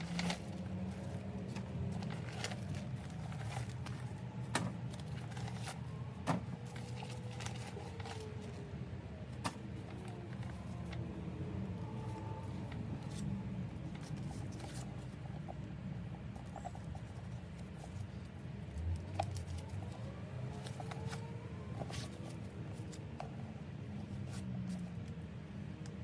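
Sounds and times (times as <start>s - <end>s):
bag packaging rustling: 0.0s - 8.6s.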